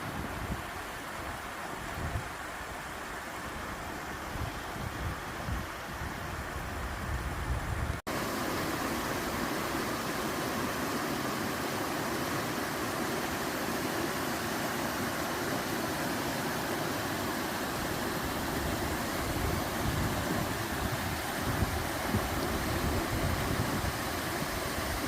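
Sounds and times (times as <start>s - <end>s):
waterfall rushing: 8.1s - 25.0s.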